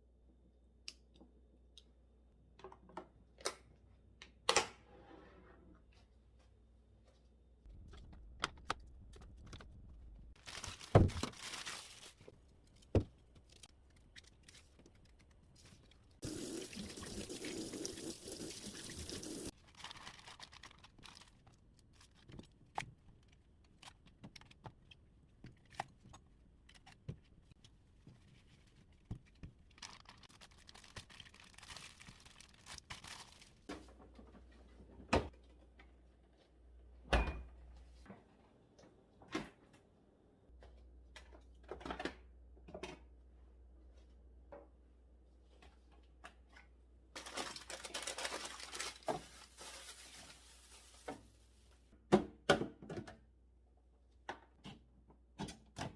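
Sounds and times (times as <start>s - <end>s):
rustling: 47.2s - 51.9s.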